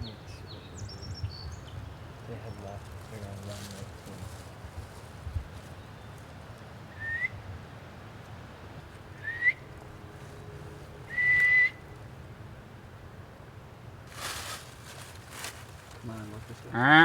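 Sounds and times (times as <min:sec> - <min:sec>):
steady wind noise: 0:00.0 - 0:16.7
whistled notes: 0:09.2 - 0:09.6, 0:11.1 - 0:11.8.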